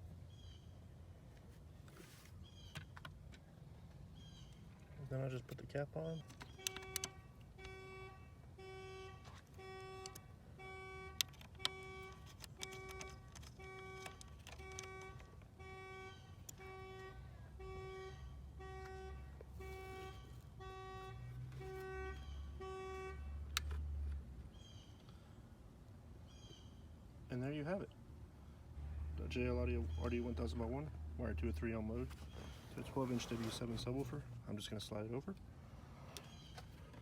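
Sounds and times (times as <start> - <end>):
sharp handling clicks: 5.4 - 7.8, 9.4 - 10.2, 11.2 - 15.5.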